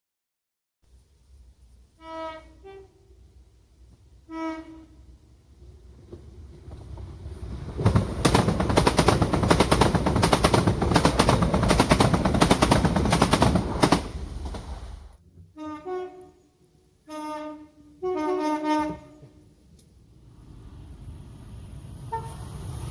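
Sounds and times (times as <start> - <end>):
train two-tone horn: 1.9 - 3.3, 4.2 - 5.2, 15.5 - 19.5, 22.0 - 22.6
train wheels clattering on rails: 6.0 - 15.2.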